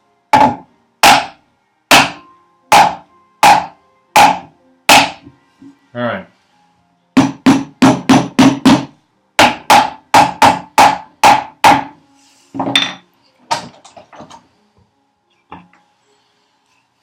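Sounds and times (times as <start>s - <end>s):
wooden parts knocked together: 12.6s - 14.4s.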